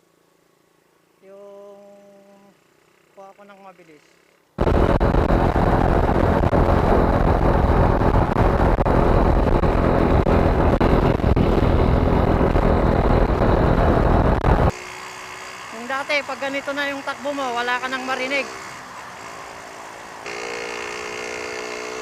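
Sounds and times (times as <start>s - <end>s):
motorcycle engine running: 1.6s - 18.8s
wind rushing over microphone: 4.6s - 14.7s.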